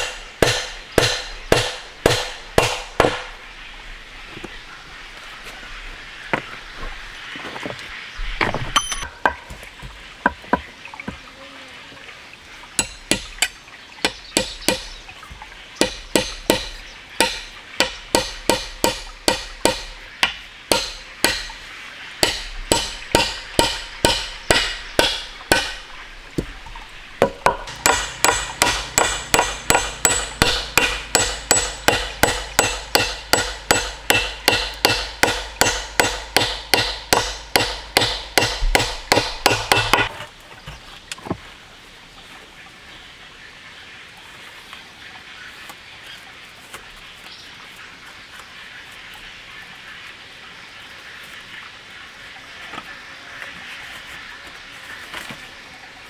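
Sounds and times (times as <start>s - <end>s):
hand tool striking with ringing tone: 8.7s - 9.4s, 12.8s - 14.9s, 27.4s - 40.1s.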